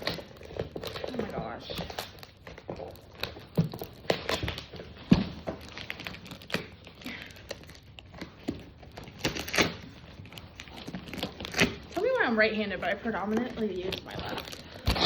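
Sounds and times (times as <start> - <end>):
cardboard box tearing: 14.0 - 15.0.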